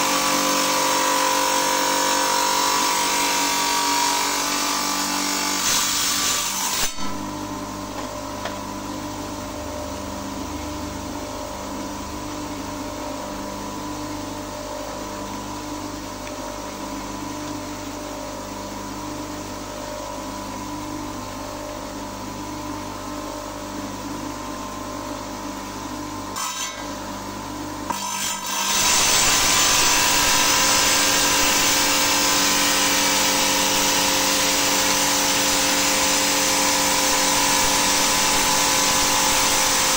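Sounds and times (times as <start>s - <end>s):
stone-cutting saw motor hum: 0.0s - 13.2s, 26.2s - 39.9s.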